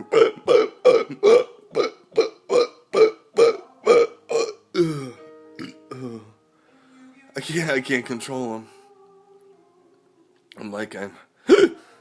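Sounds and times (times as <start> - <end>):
man hiccuping: 0.1 - 6.4, 11.5 - 11.8.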